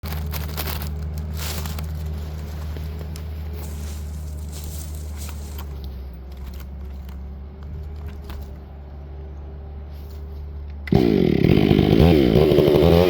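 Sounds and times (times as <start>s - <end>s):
faint crackles and clicks: 0.0s - 8.6s
chainsaw idling: 0.0s - 8.8s, 10.8s - 13.0s.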